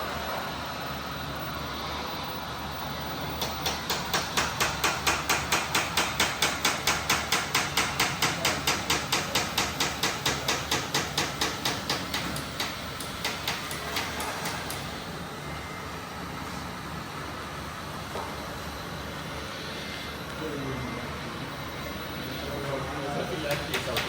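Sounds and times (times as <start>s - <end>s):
steady low hum: 14.2s - 24.0s.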